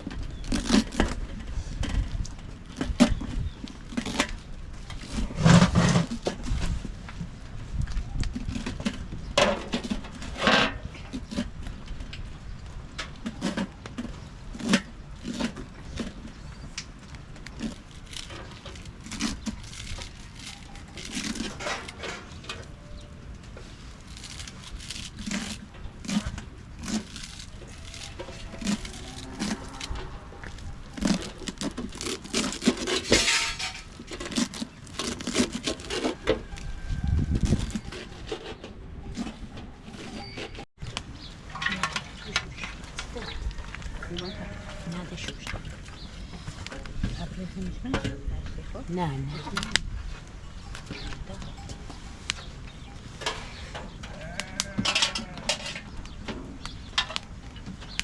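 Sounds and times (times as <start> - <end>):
pots and utensils clattering: 32.6 - 34.3, 54.8 - 55.9.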